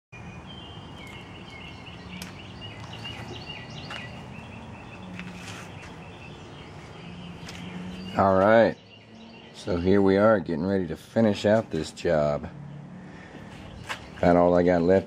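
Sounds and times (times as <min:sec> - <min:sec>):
songbirds chirping: 0:00.2 - 0:15.0.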